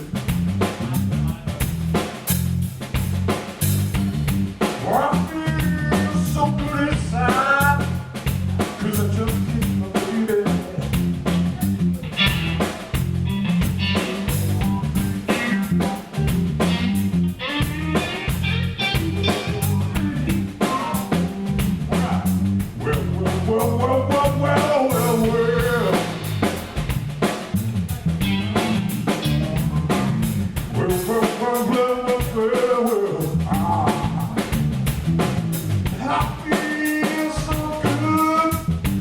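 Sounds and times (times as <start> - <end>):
bass line: 0.0 - 39.0
blues band playing: 0.0 - 39.0
drum rimshots: 0.0 - 39.0
bending lead guitar lines: 10.4 - 30.6.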